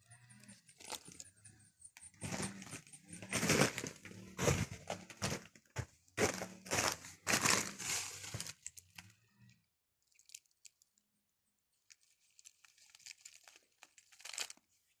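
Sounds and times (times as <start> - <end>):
bark crunching and crackling: 2.0 - 9.1, 12.4 - 14.6.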